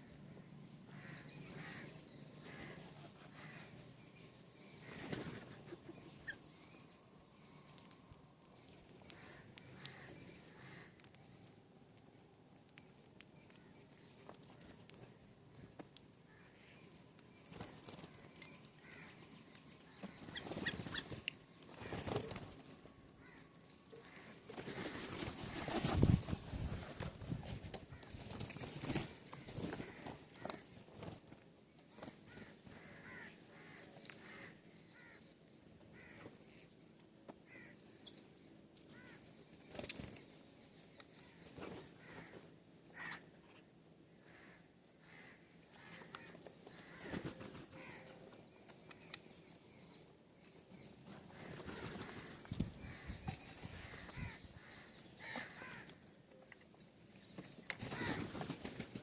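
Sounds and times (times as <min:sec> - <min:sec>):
birds chirping: 0:00.0 - 0:59.0
bird wings fluttering: 0:04.8 - 0:05.9, 0:20.2 - 0:23.4, 0:24.1 - 0:31.4, 0:46.8 - 0:48.1, 0:51.1 - 0:54.4, 0:57.4 - 0:59.0.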